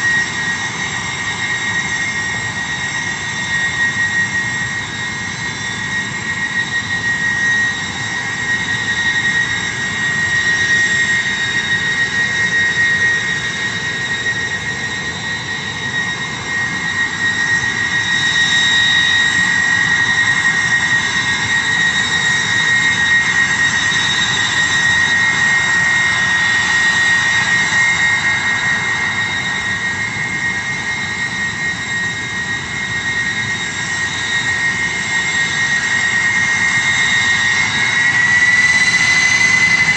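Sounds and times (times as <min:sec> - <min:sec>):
jet engines whining: 0:00.0 - 0:39.9.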